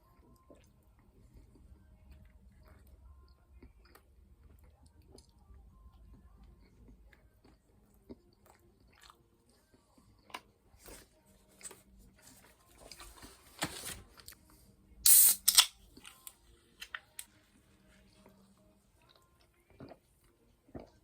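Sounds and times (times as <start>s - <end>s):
chewing and biting: 0.0s - 11.9s, 19.0s - 21.0s.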